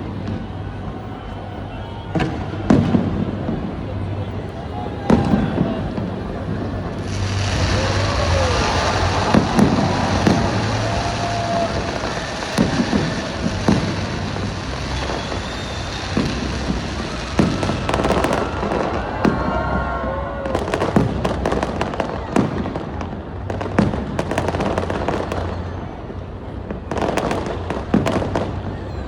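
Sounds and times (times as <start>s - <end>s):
crackling fireworks stars: 0.0s - 29.0s
crowd murmuring: 0.0s - 29.0s
whistling fireworks: 0.0s - 29.0s
fireworks booming: 2.1s - 25.6s.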